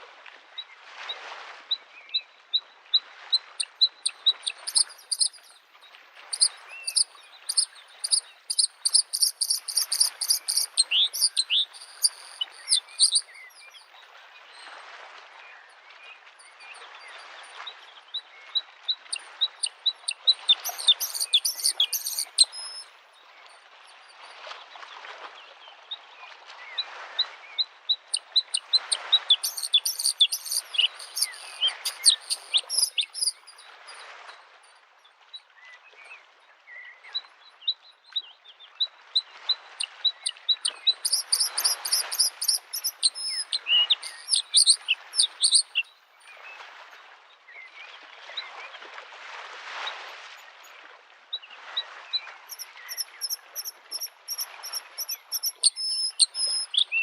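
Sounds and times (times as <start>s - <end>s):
small waves lapping on shore: 0.0s - 57.0s
bird singing rapid trills: 3.8s - 5.6s, 6.3s - 13.8s, 19.4s - 22.9s, 28.3s - 33.7s, 40.2s - 45.9s, 52.5s - 57.0s.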